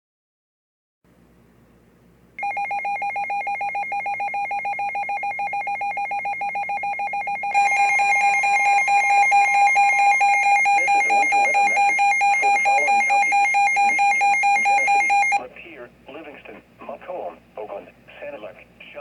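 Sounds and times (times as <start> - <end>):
rapid electronic beeping alarm: 2.4 - 15.4.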